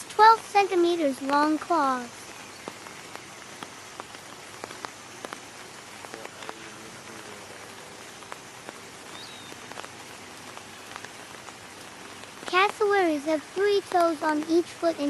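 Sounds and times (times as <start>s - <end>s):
dripping ticks: 0.0s - 15.0s
steady rain: 0.0s - 15.0s
faint bird chirp: 1.8s - 9.9s.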